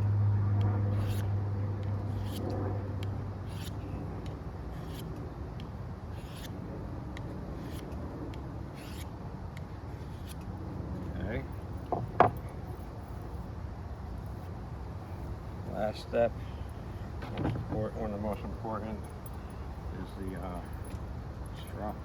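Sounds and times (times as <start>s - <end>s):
low engine-like hum: 0.0s - 22.0s
knife scraping on sharpening stone: 1.0s - 1.3s, 4.7s - 5.1s, 6.1s - 6.5s.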